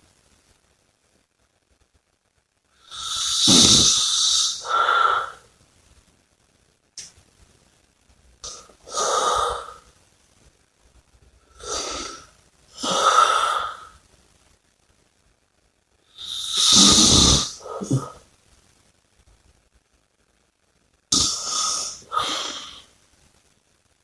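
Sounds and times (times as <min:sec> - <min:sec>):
person snoring and breathing heavily: 0:02.8 - 0:05.4, 0:08.4 - 0:09.8, 0:11.5 - 0:14.0, 0:16.2 - 0:18.2, 0:21.2 - 0:22.9.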